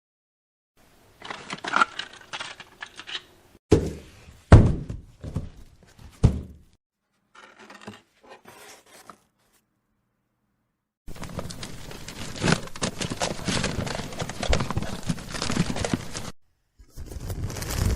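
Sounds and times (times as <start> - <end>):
heavy thuds: 3.7 - 6.8
packaging rustling: 11.1 - 16.4.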